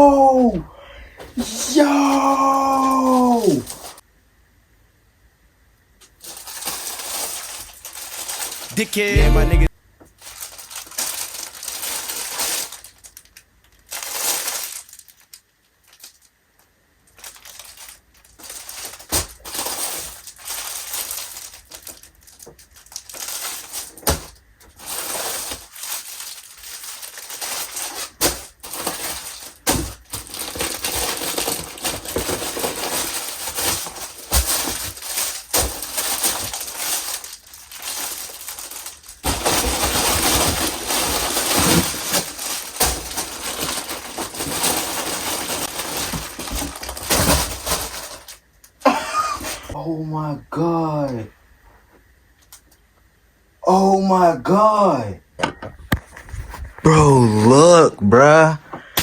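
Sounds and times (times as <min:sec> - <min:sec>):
packaging rustling and crinkling: 0:01.2 - 0:04.0, 0:06.0 - 0:09.1, 0:10.1 - 0:49.8, 0:55.9 - 0:56.9.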